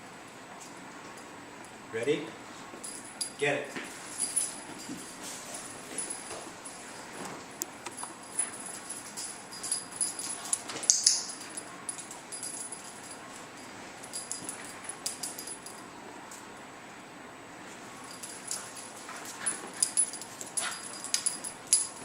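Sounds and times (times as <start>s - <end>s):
high jingles and clicks: 7.6s - 13.3s, 18.0s - 22.0s.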